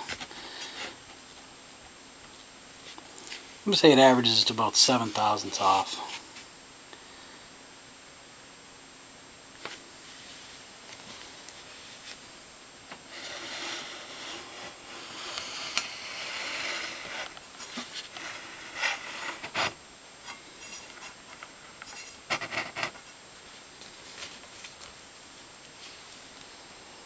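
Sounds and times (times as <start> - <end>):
rubbing and scraping on table saw: 13.1 - 19.8, 21.9 - 23.1.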